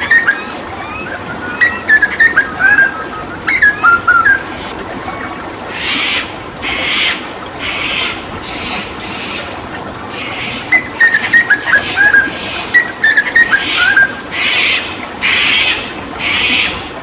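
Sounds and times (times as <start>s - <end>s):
bird whistling song: 0.0s - 4.6s, 10.2s - 16.8s
bird harsh rasping calls: 0.0s - 9.5s, 10.1s - 16.9s.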